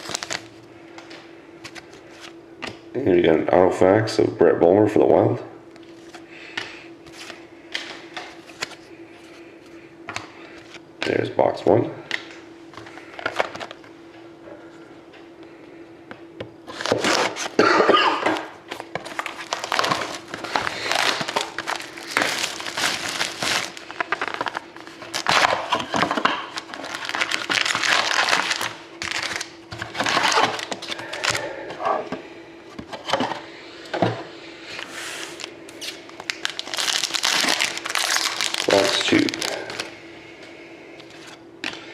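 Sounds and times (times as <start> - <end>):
plastic wrapping crinkling and tearing: 0.0 - 0.5, 16.7 - 17.6, 18.4 - 31.5, 35.2 - 39.9
faint steady hum: 0.0 - 41.9.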